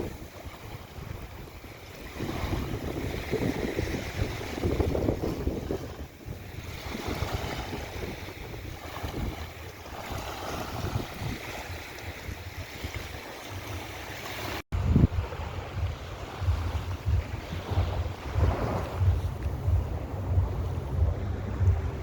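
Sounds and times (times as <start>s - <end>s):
surf washing onto beach: 0.0s - 22.0s
wind rumble on microphone: 0.0s - 22.0s.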